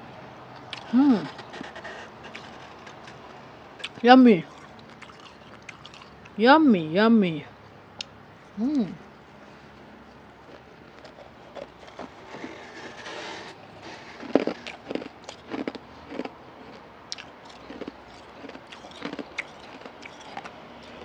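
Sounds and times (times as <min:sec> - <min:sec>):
ice crunching being chewed: 0:00.6 - 0:06.4, 0:10.0 - 0:21.0.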